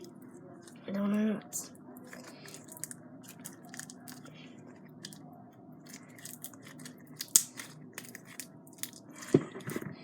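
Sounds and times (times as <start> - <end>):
sticky slime clicks and crackles: 5.8 - 9.0.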